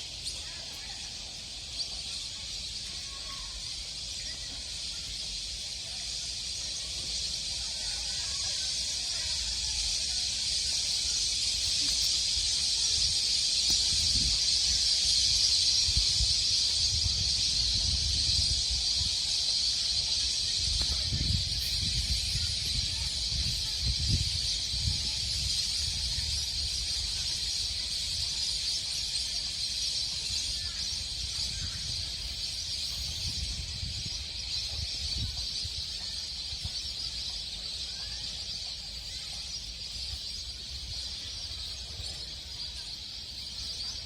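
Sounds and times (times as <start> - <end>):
high-pitched outdoor chorus: 0.0 - 44.0
wind rumble on microphone: 13.0 - 28.2, 30.6 - 35.9.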